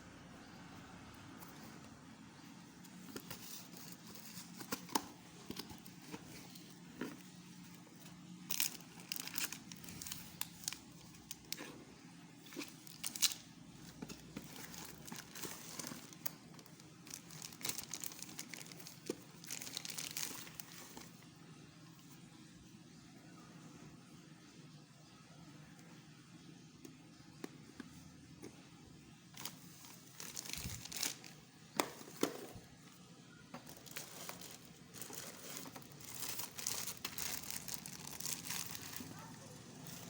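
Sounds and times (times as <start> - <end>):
packaging crinkling and rustling: 2.8 - 11.8, 12.4 - 21.2, 29.3 - 32.7, 33.6 - 40.0.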